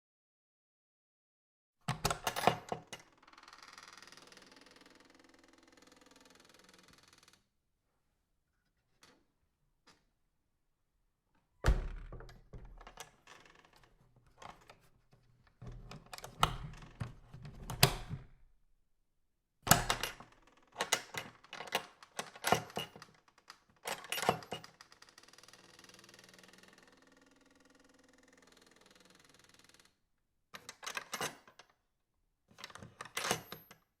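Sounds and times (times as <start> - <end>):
heavy door thud: 11.6 - 12.8
door knocks and rattles: 11.6 - 13.2, 15.6 - 18.4
latch clacking shut: 15.6 - 18.3, 19.7 - 20.3.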